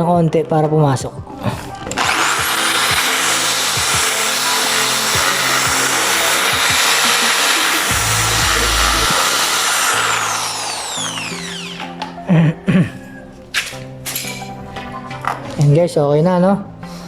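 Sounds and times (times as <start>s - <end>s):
background music: 0.0s - 17.0s
power tool motor spinning: 1.9s - 12.2s.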